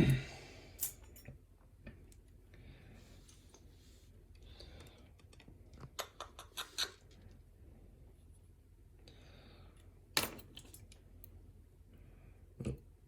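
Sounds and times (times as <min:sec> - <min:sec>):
handling small metal lock parts: 0:10.2 - 0:11.4.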